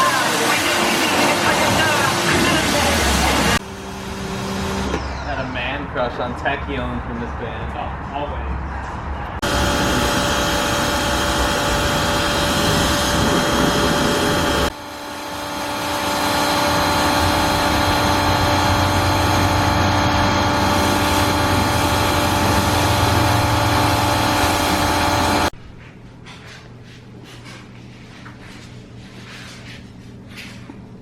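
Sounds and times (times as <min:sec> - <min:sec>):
car engine running: 0:15.7 - 0:25.5.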